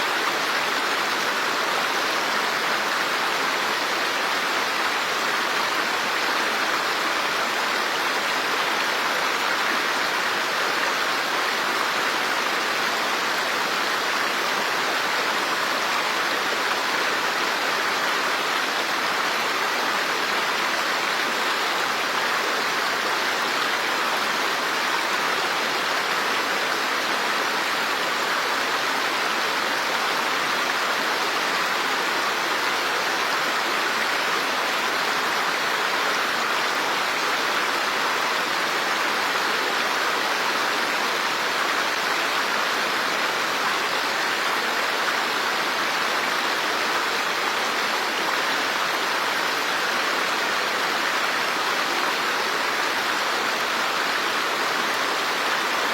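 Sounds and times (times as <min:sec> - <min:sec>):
running water rushing: 0:00.0 - 0:55.9.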